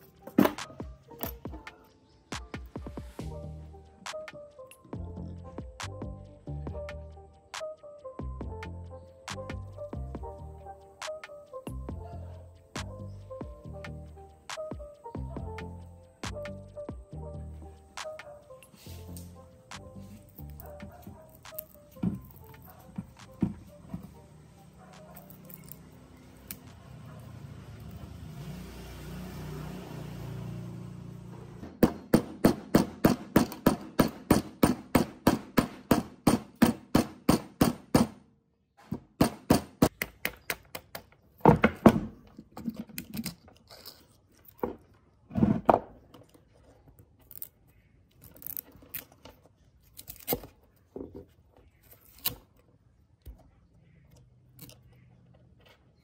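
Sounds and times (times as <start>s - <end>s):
parts being handled: 0.0s - 1.9s, 18.5s - 26.7s, 39.9s - 53.5s.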